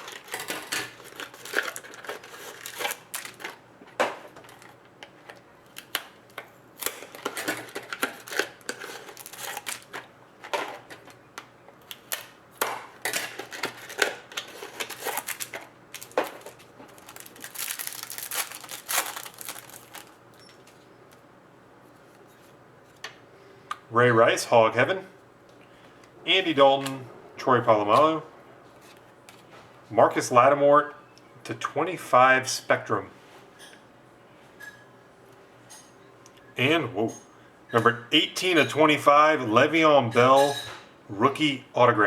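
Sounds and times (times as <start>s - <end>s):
card packs tearing and crinkling: 0.0s - 3.6s, 6.8s - 10.1s, 13.0s - 20.2s.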